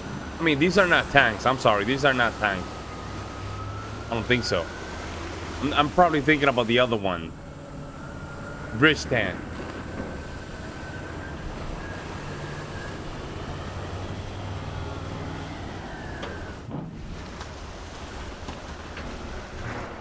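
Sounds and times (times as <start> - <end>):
vehicle engines running: 0.0 - 20.0
water noise: 0.0 - 20.0.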